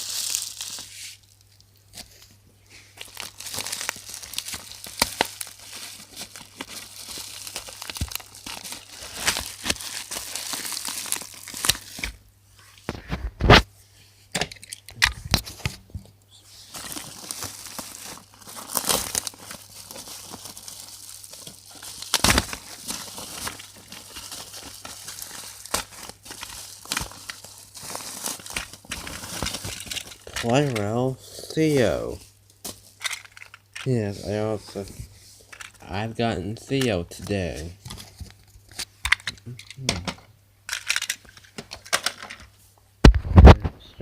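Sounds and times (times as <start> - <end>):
packaging crinkling and tearing: 0.0 - 2.3, 3.0 - 12.2, 16.7 - 34.8.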